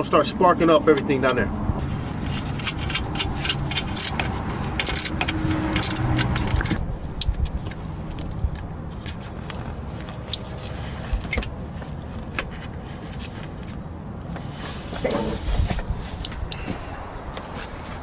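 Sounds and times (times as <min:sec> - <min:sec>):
metallic tool clicks and scraping: 0:01.0 - 0:11.6
low rumble: 0:01.5 - 0:09.8.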